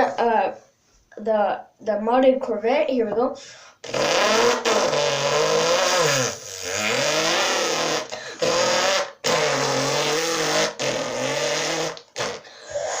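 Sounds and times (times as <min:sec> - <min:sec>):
boy imitating engine revving: 0:03.8 - 0:13.0.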